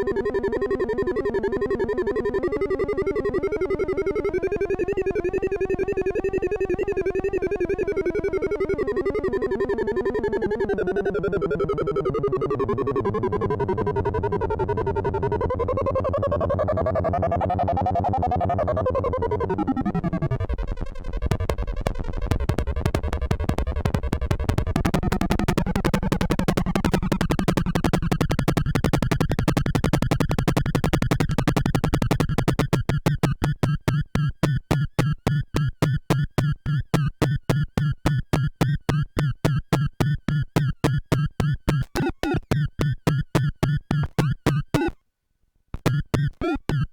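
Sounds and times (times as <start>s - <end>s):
buzzy synthesizer tone: 26.2s - 45.0s, 45.8s - 46.9s.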